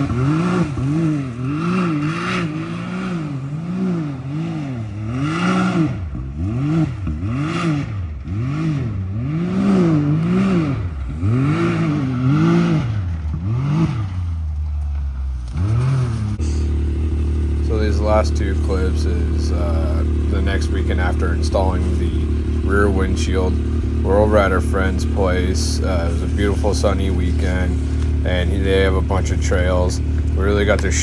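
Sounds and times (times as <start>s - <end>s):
engine revving up and down: 0.0s - 31.0s.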